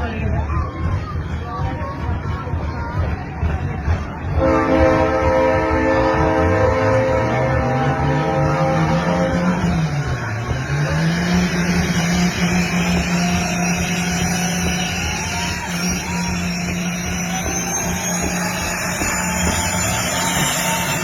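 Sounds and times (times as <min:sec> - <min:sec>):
diesel truck engine revving high: 0:04.4 - 0:21.0
faint high whine: 0:09.0 - 0:21.0.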